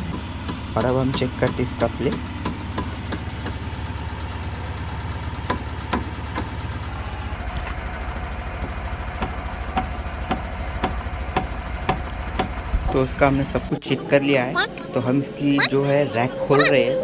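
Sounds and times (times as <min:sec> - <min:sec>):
car engine idling: 0:00.0 - 0:07.4, 0:11.7 - 0:13.8.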